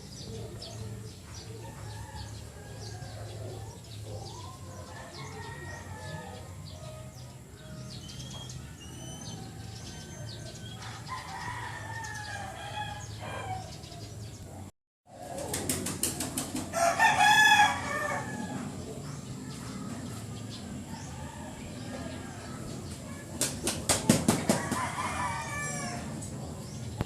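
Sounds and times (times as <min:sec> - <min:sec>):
small birds chirping: 0:00.0 - 0:14.7, 0:15.3 - 0:27.0
rooster flapping wings: 0:15.2 - 0:16.8, 0:23.4 - 0:25.0
rooster crowing loudly: 0:16.7 - 0:18.5, 0:24.5 - 0:26.1.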